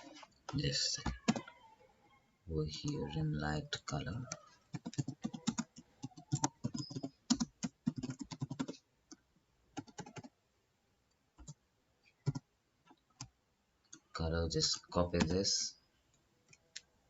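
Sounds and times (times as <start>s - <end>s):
computer keyboard typing: 0.0s - 1.6s, 4.2s - 8.8s, 9.8s - 10.3s, 12.2s - 12.4s, 15.1s - 15.4s.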